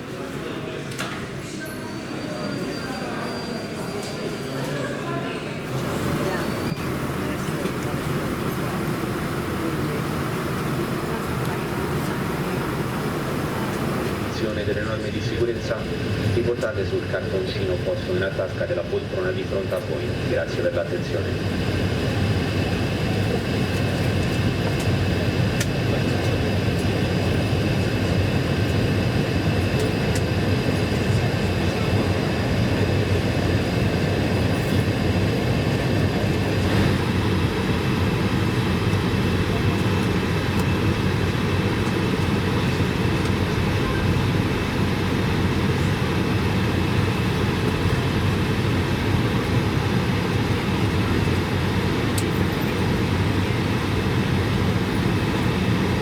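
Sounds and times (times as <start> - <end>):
low airplane cabin rumble: 5.6 - 56.0
high steady whining tones: 5.7 - 18.2.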